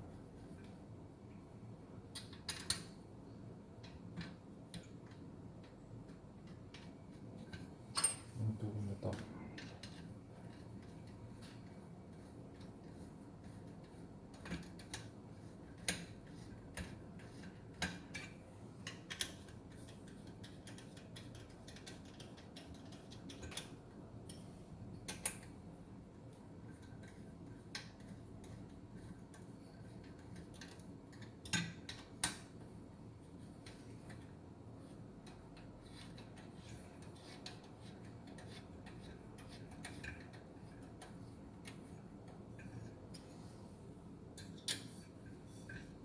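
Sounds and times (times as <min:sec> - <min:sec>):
faint low hum: 0:00.0 - 0:15.8.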